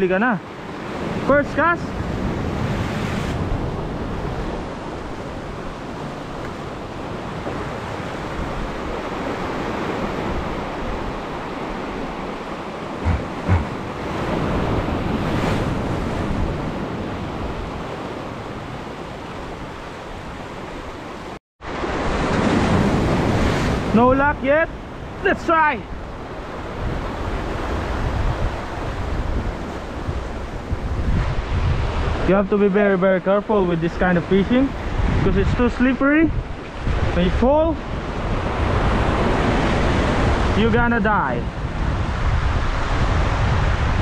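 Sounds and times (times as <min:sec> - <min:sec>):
surf washing against shore: 0:00.0 - 0:44.0
wind buffeting microphone: 0:00.6 - 0:20.9, 0:25.9 - 0:32.3, 0:34.3 - 0:44.0
short low thumps: 0:13.0 - 0:14.0.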